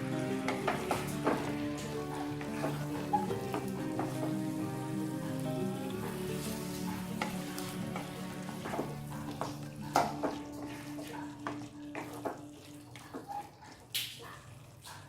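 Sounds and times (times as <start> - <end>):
background music: 0.0 - 13.0
gravy sizzling: 0.0 - 15.0
spoon clinking and scraping pan: 0.3 - 4.3, 6.1 - 13.5.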